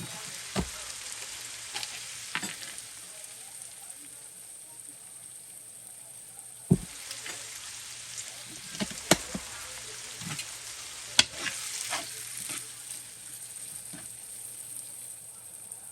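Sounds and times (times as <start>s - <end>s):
fish sizzling in a pan: 0.0s - 15.9s
utensil knocking against pan: 8.7s - 9.5s.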